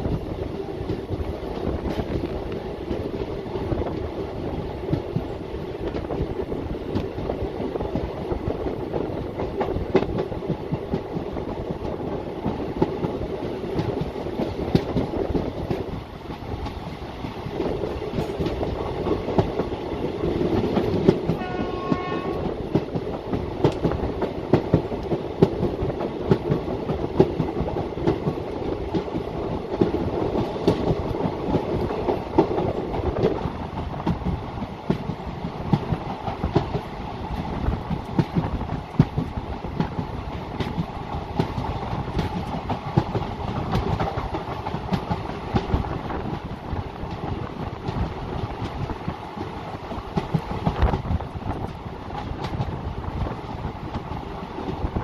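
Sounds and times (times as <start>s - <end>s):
train wheels clattering over rail joints: 0.0s - 55.0s
train horn blast: 21.3s - 22.5s.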